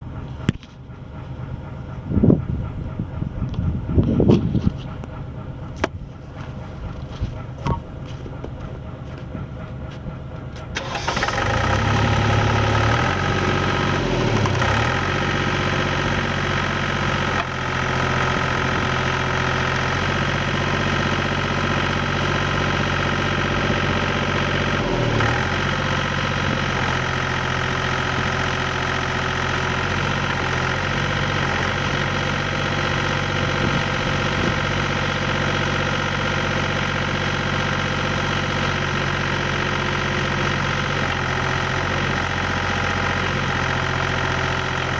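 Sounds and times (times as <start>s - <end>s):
trencher engine running: 0.0s - 44.9s.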